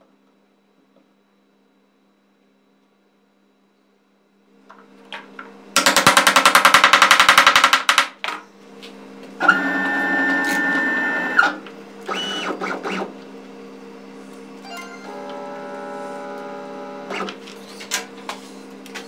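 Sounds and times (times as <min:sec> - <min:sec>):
machine whine: 0:09.4 - 0:18.0
steady hum: 0:13.1 - 0:17.7.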